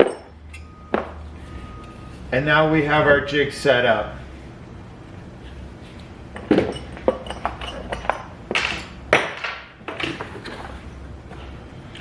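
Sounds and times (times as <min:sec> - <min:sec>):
metal tools clinking and knocking: 0:00.0 - 0:01.0, 0:06.4 - 0:09.0.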